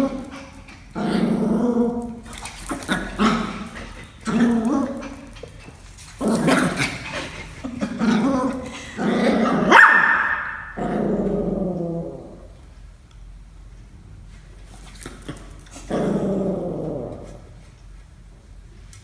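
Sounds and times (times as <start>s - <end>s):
dog growling and barking: 0.0s - 5.5s, 6.1s - 12.6s, 15.1s - 17.6s
dog high-pitched squeal: 9.8s - 10.8s.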